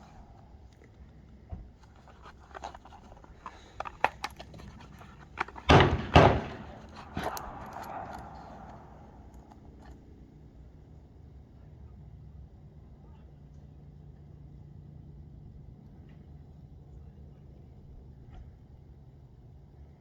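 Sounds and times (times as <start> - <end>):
light clicks and knocks: 1.5 - 10.0
loud thuds: 3.6 - 9.3.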